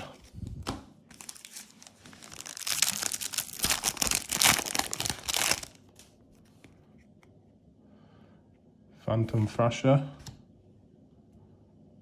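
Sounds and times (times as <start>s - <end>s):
foil wrapper crinkling: 1.1s - 6.1s.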